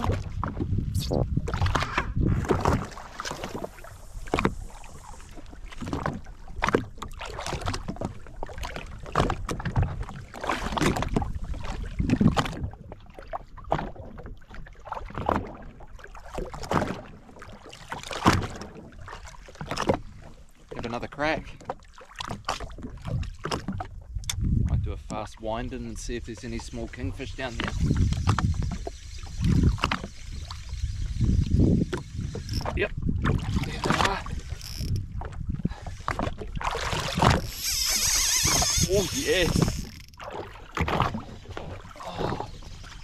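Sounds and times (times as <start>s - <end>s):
wind on microphone: 0.0s - 6.8s, 9.0s - 13.0s, 22.8s - 43.0s
water splashing against hull: 0.0s - 43.0s.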